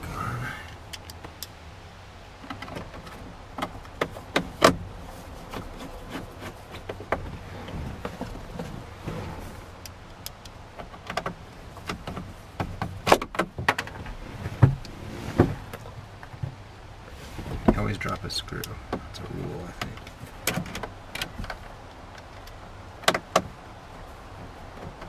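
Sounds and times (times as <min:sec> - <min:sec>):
bolts and hand tools clicking: 0:00.7 - 0:01.6.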